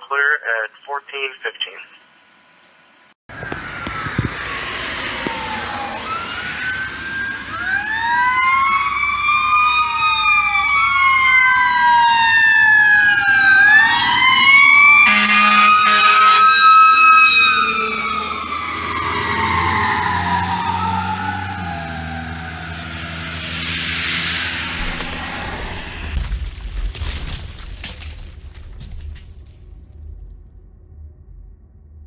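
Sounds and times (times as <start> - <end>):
wailing electronic siren: 3.3 - 26.0
air horn blasts: 15.0 - 18.0.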